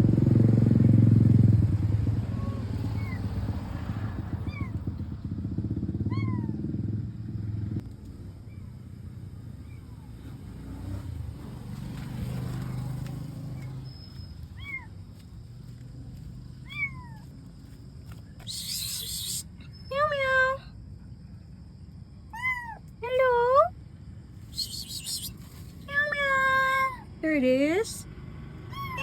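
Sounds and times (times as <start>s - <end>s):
vehicle engine rumbling: 0.0s - 29.0s
kitten meowing: 2.3s - 3.2s, 4.4s - 4.8s, 6.1s - 6.6s, 14.6s - 14.9s, 16.6s - 17.3s, 18.4s - 20.2s, 22.3s - 22.8s, 24.5s - 27.0s, 28.7s - 29.0s.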